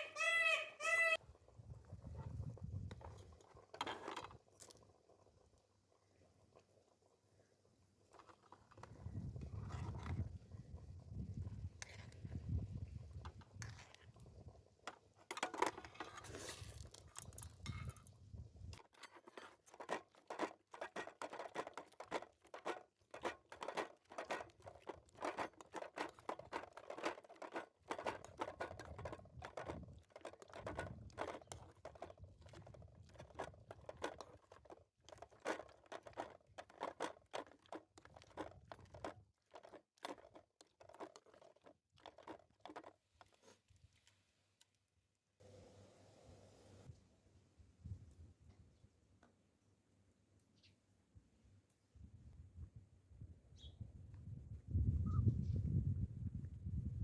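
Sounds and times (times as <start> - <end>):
quick irregular crunches and clicks: 18.8 - 44.8.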